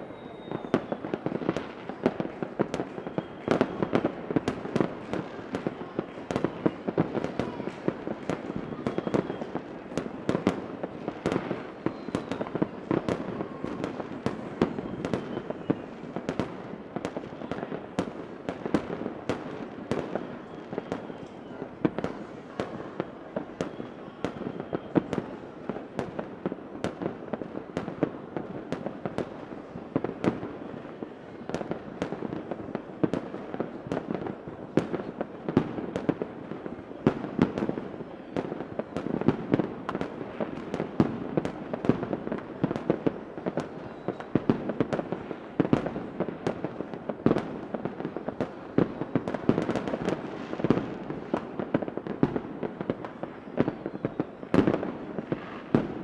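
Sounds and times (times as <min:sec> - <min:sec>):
rocket whistles: 0:00.0 - 0:01.2, 0:02.9 - 0:04.0, 0:08.6 - 0:09.6, 0:11.7 - 0:16.0, 0:20.1 - 0:21.7
fireworks bangs and crackles: 0:00.0 - 0:56.0.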